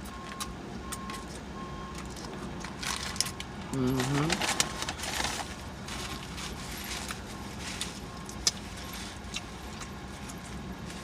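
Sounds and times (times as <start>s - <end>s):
low steady hum: 0.0s - 11.0s
chewing with mouth smacking: 7.8s - 11.0s.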